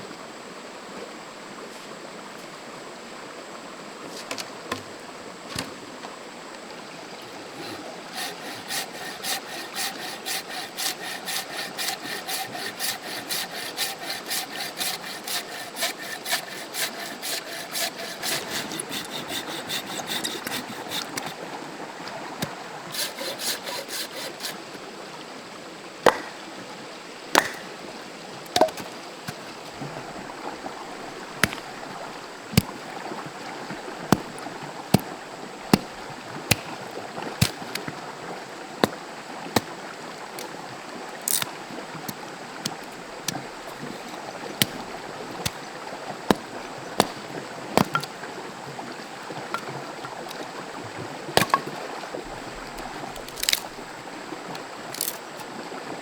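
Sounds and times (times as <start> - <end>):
stream running: 0.0 - 56.0
hand tool rasping on wood: 7.3 - 21.5, 22.4 - 24.8, 26.1 - 26.3, 27.3 - 27.7, 28.5 - 29.4, 30.9 - 32.8, 34.1 - 35.1, 35.7 - 37.8, 41.3 - 41.5, 42.6 - 45.6, 46.3 - 48.1
sharp knocks: 26.1 - 26.4, 27.4 - 27.7.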